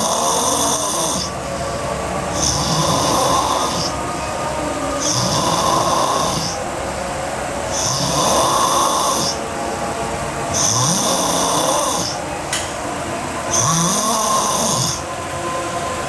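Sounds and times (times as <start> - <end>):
woman snoring heavily: 0.0 - 4.0, 5.0 - 6.7, 7.7 - 9.5, 10.5 - 12.2, 13.5 - 15.1.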